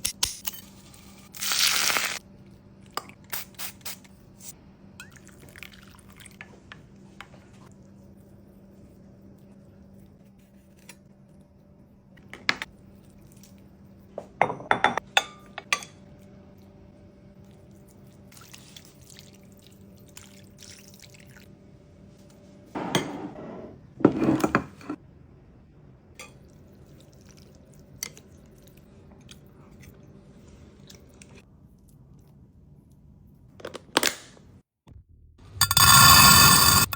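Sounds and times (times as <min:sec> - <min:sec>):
dishes and utensils clinking: 0:14.4 - 0:16.0, 0:22.8 - 0:25.0.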